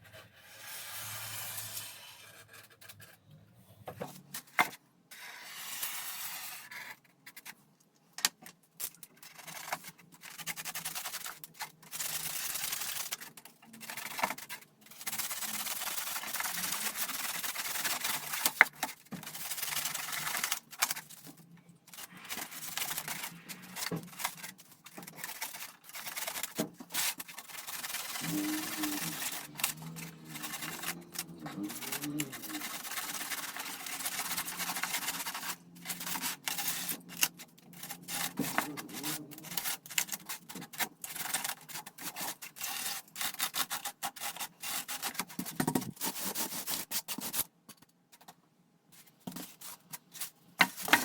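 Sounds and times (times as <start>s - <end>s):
rubbing or scraping strokes: 0.0s - 3.0s, 9.5s - 41.3s.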